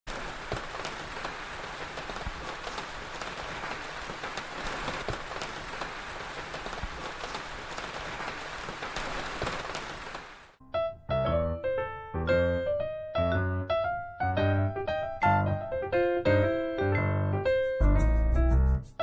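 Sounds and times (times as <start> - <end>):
sharp raindrop impacts: 0.1 - 10.6
steady rain hiss: 0.1 - 10.6.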